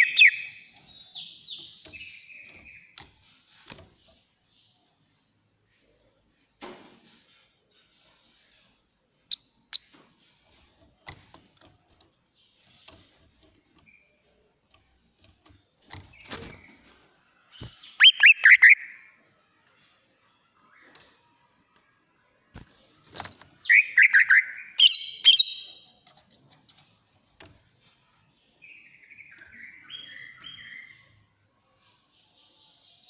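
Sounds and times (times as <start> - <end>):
bird clicks and rustles: 0.0 - 4.4, 9.7 - 17.8, 22.5 - 24.1, 25.8 - 27.9
bird high call notes: 18.0 - 19.0.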